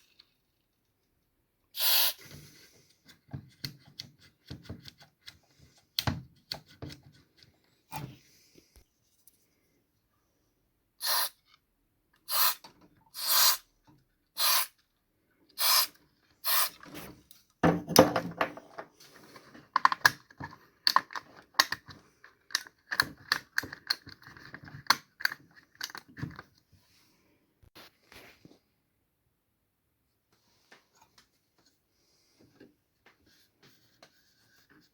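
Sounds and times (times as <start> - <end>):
aerosol can hisses: 1.8 - 2.2, 11.0 - 11.4, 12.3 - 12.6, 13.2 - 13.6, 14.4 - 14.7, 15.6 - 16.7
plastic and metal clicks and clatter: 17.2 - 26.6.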